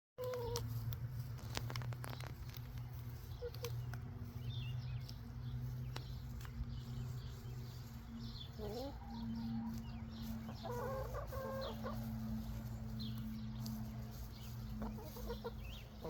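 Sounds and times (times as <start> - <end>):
soft chicken calls: 0.2 - 0.8, 2.9 - 5.1, 7.1 - 16.0
chickens pecking clicks: 0.2 - 6.9
steady low hum: 0.6 - 16.0.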